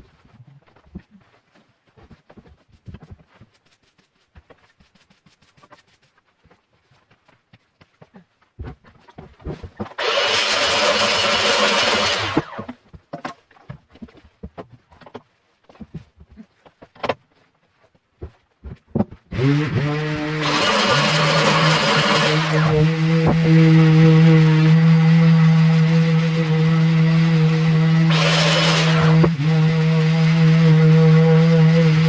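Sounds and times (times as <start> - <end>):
loud rush of machine noise: 10.0 - 12.6, 19.4 - 32.0.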